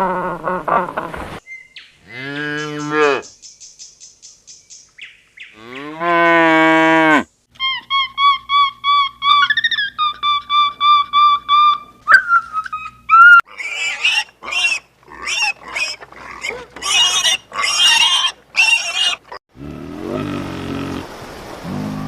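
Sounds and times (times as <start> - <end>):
animal squealing: 7.6 - 19.4
low rough animal call: 19.1 - 22.0.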